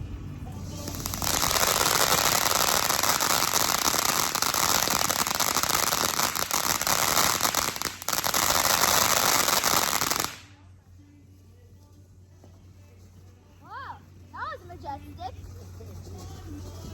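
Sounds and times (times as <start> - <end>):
firework hissing and crackling: 0.5 - 10.6.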